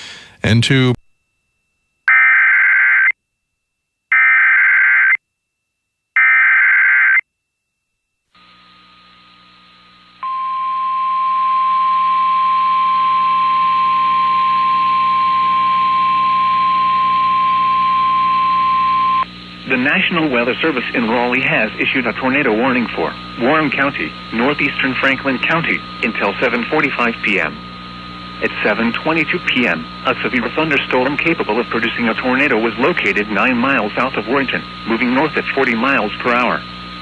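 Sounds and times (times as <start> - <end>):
faint hum: 0.0 - 2.0, 7.5 - 37.0
steady attention tone: 10.2 - 36.6.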